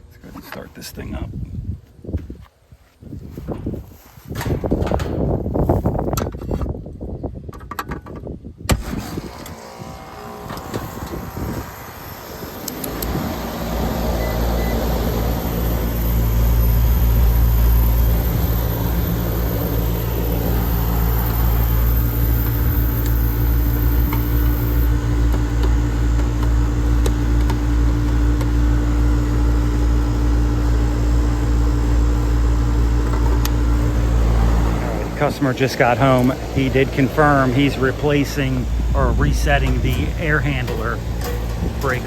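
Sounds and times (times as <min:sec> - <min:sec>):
air conditioner unit humming: 0:09.6 - 0:42.0.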